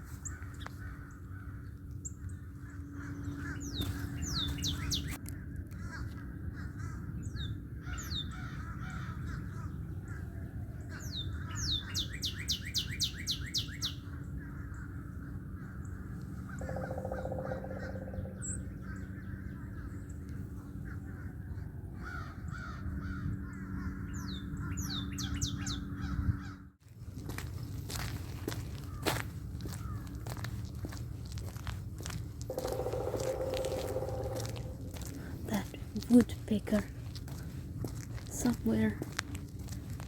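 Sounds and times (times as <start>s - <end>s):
crows cawing: 0.1s - 4.2s, 5.3s - 7.2s, 7.8s - 9.8s, 14.1s - 19.9s, 22.0s - 26.6s, 28.5s - 31.0s, 32.0s - 35.4s
high falling bird calls: 2.1s - 5.2s, 16.4s - 20.9s, 32.5s - 35.9s
footsteps crunching: 3.7s - 5.2s, 26.8s - 40.0s.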